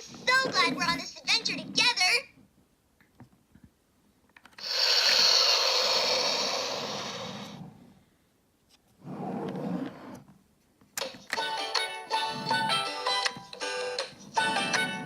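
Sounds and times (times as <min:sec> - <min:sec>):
toy jet engine whoosh: 0:04.6 - 0:07.7.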